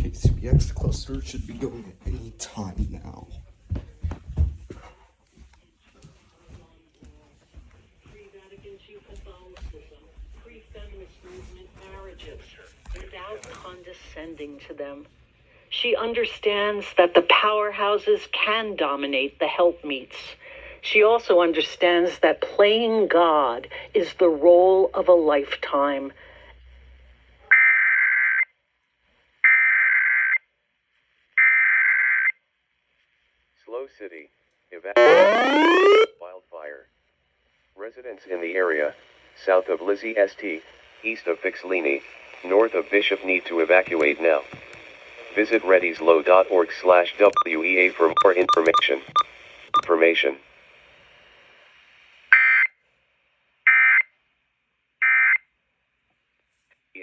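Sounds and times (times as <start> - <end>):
buzzy alert beeps: 35.0 - 36.1, 48.2 - 48.9
digital data tone bursts: 35.0 - 36.1, 47.4 - 49.9.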